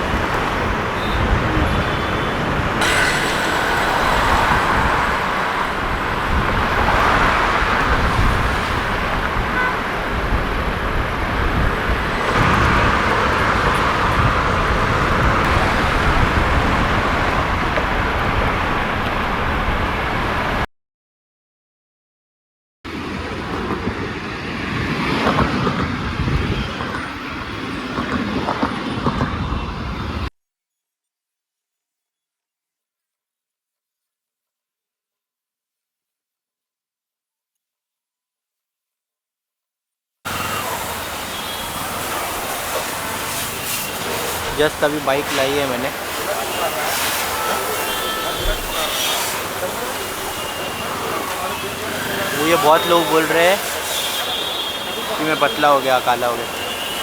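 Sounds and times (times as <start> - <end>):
road traffic rushing past: 0.0 - 20.7, 40.3 - 57.0.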